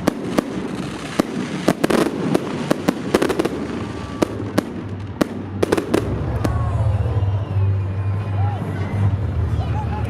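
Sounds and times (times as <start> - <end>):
fireworks crackle: 0.0 - 7.0
fireworks bangs: 0.0 - 7.1.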